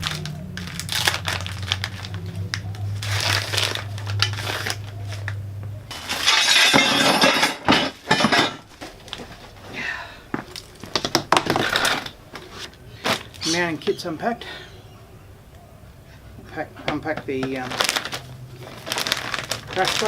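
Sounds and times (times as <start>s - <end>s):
packaging rustling and crinkling: 0.0s - 14.0s, 17.1s - 20.0s
low steady hum: 0.0s - 20.0s
metal brackets and bolts clinking: 5.9s - 8.7s.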